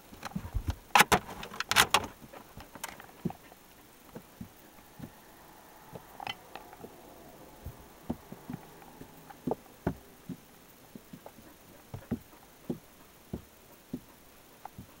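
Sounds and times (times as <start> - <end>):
animals wrestling thumps and scuffles: 7.6 - 15.0.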